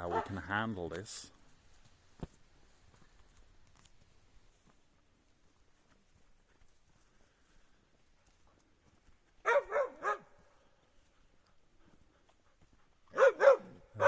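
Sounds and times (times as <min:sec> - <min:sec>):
dog barking: 0:00.0 - 0:00.4, 0:09.4 - 0:10.4, 0:13.1 - 0:14.0.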